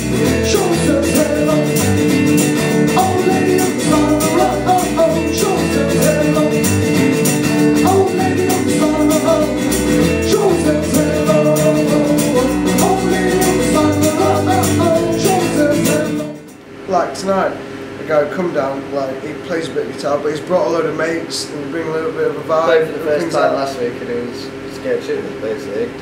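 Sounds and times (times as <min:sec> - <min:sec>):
person singing: 0:00.0 - 0:16.5
strummed guitar: 0:00.0 - 0:16.6.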